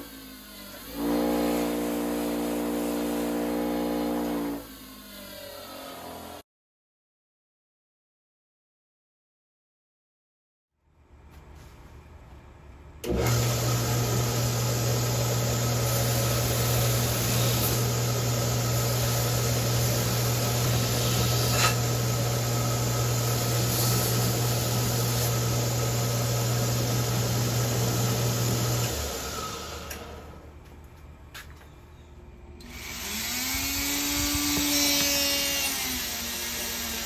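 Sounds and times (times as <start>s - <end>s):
electric power tool running: 0.0s - 6.4s, 13.1s - 30.4s, 32.6s - 37.0s.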